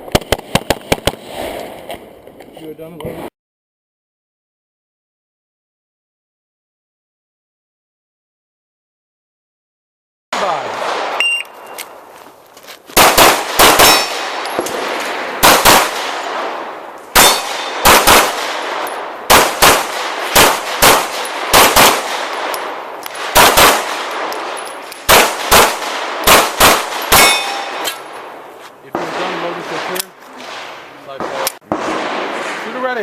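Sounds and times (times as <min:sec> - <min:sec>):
pistol shots with echo: 0:13.0 - 0:33.0.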